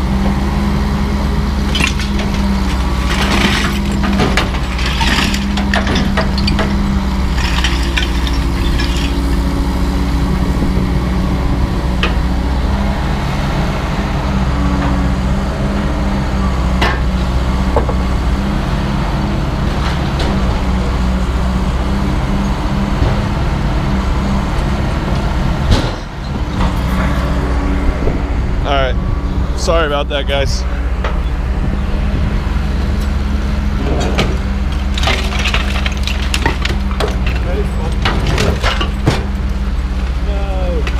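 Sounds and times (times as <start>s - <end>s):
engine droning: 0.0s - 40.9s.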